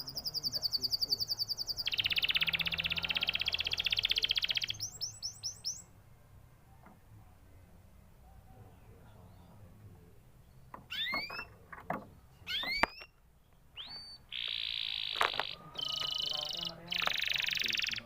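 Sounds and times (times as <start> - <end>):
canary singing: 0.0 - 6.0, 10.4 - 18.0.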